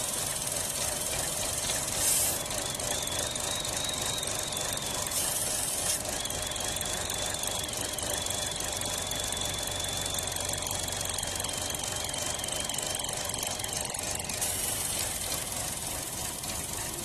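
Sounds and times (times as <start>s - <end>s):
hiss: 0.0s - 2.4s, 5.1s - 6.0s, 14.4s - 15.5s
car engine idling rough: 0.0s - 17.0s
high whistle: 1.6s - 13.8s.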